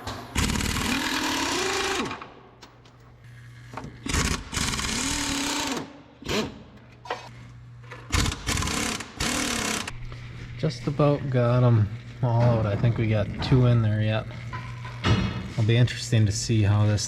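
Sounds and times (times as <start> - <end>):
impact wrench whirring: 0.0 - 2.3, 3.7 - 6.8, 8.0 - 10.1.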